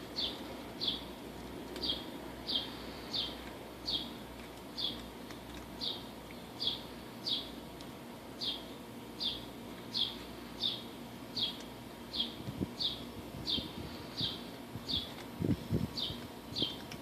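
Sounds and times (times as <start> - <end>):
bird chirping: 0.1 - 1.1, 1.8 - 4.2, 4.8 - 5.1, 5.8 - 7.6, 8.4 - 15.2, 15.9 - 16.8.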